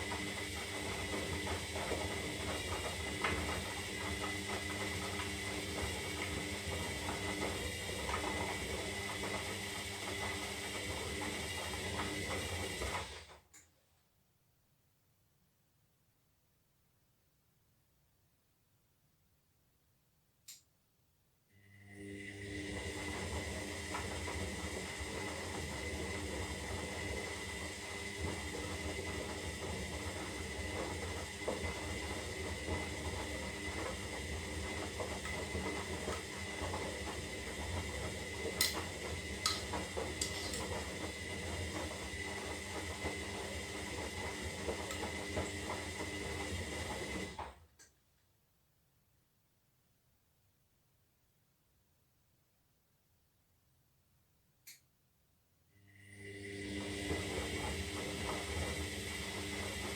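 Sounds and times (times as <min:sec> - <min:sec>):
washing machine motor whining: 0:00.0 - 0:13.4, 0:21.6 - 0:47.6, 0:55.9 - 0:59.9.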